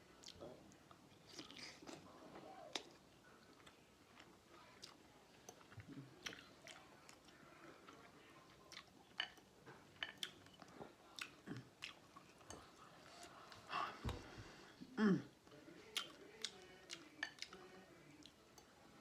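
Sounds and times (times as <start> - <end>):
person chewing: 0.2 - 2.0, 2.7 - 8.0, 8.7 - 13.4.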